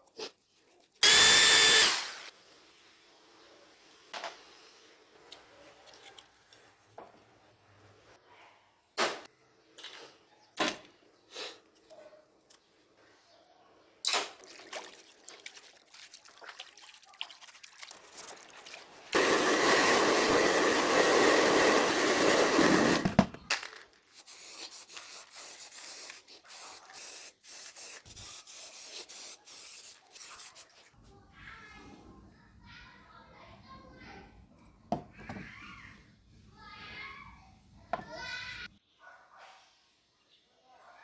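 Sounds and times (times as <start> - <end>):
hissing spray: 19.2 - 23.2.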